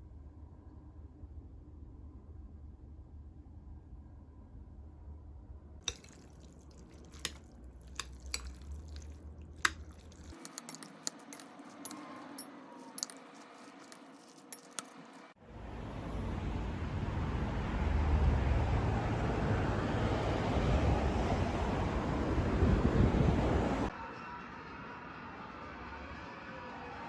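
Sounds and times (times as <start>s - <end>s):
light clinks and taps: 5.9s - 15.2s.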